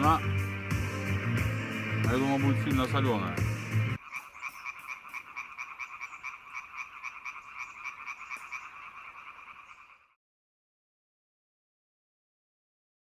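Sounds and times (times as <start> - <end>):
frogs croaking: 0.0 - 10.2.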